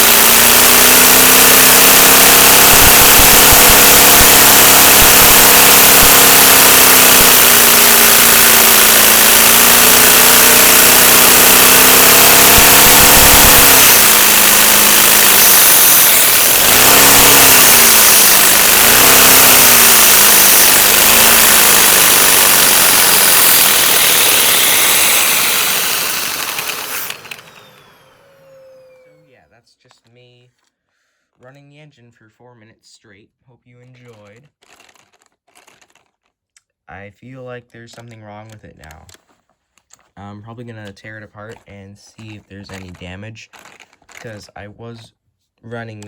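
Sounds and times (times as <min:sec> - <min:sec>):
pneumatic toy engine whirring: 0:00.0 - 0:29.3, 0:42.7 - 0:44.4.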